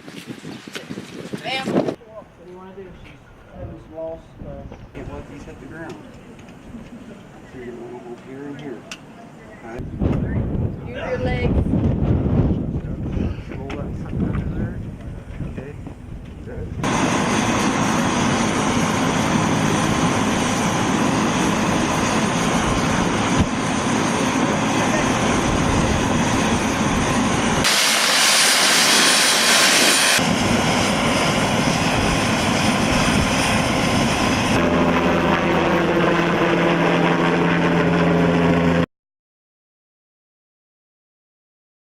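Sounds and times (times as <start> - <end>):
hissing rush: 16.8 - 34.6
loud engine drone: 16.8 - 38.9.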